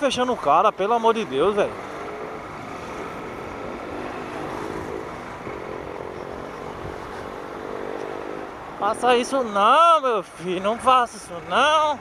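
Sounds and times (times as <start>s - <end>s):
motorcycle engine cruising: 0.0s - 12.0s
wind noise on microphone: 2.5s - 7.7s.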